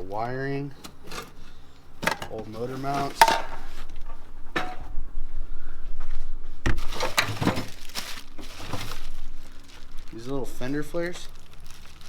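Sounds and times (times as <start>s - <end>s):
car parts clinking and knocking: 2.0s - 2.4s, 3.0s - 4.9s.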